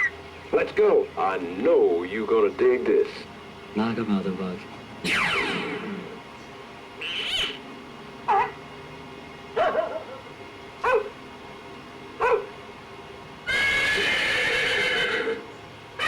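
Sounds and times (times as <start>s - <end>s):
held animal call: 7.0s - 7.6s, 13.5s - 16.0s
dog barks from a record: 8.3s - 8.6s, 9.6s - 11.2s, 12.2s - 12.6s.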